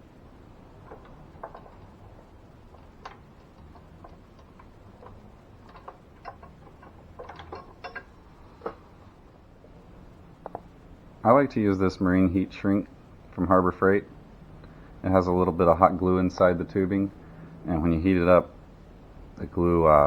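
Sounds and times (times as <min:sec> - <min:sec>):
hands handling small parts: 0:00.5 - 0:09.0.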